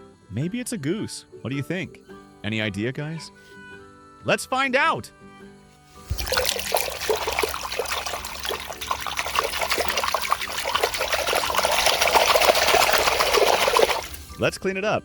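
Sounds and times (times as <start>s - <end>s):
water running and splashing: 6.0s - 14.7s.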